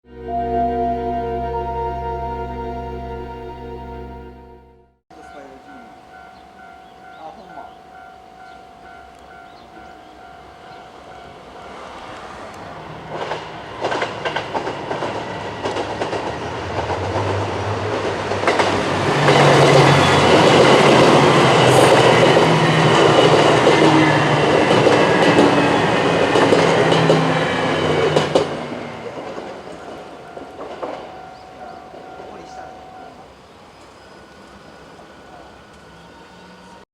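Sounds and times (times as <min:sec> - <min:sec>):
train wheels clacking on rails: 0:05.2 - 0:33.2
diesel train engines running: 0:05.2 - 0:36.8.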